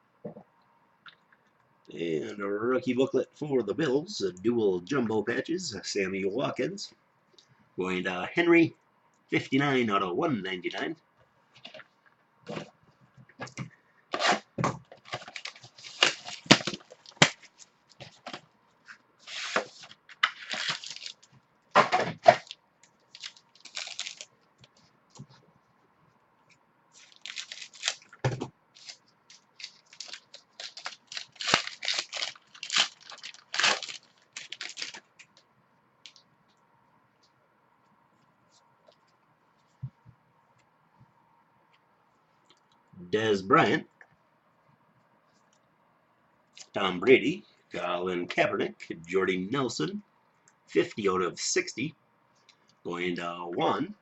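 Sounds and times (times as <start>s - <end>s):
cards and packaging rustling: 13.4s - 25.3s, 26.9s - 35.4s.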